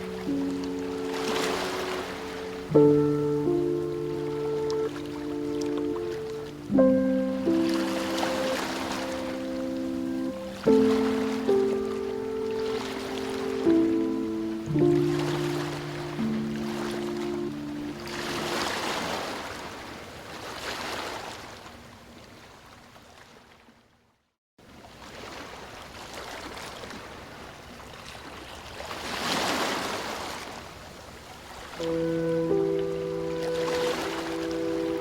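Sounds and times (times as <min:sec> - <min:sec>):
soft sustained music notes: 0:00.0 - 0:19.1, 0:31.8 - 0:35.0
ocean surf washing onto beach: 0:00.0 - 0:20.1, 0:31.8 - 0:35.0.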